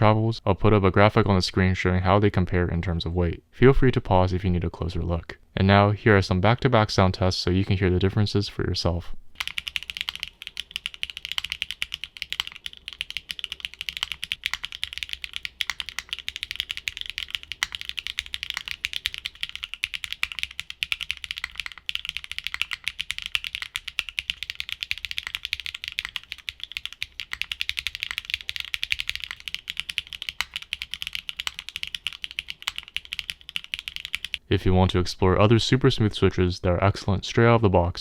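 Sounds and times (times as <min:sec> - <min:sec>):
fast typing on mechanical keyboard: 0:09.4 - 0:34.4.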